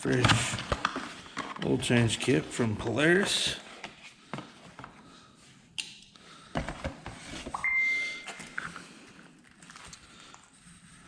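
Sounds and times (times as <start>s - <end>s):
high-pitched tone: 7.6s - 8.5s.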